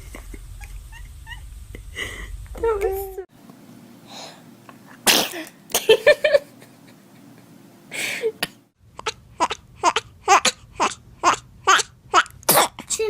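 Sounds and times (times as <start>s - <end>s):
baby sneezing: 5.0s - 5.5s, 11.7s - 13.0s
baby vocal bursts: 9.0s - 13.0s.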